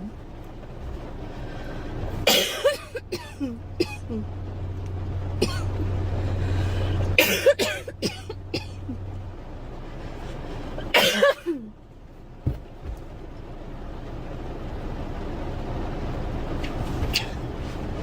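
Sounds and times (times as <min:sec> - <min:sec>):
girl coughing: 0:02.3 - 0:04.1, 0:07.2 - 0:08.8, 0:11.0 - 0:11.6.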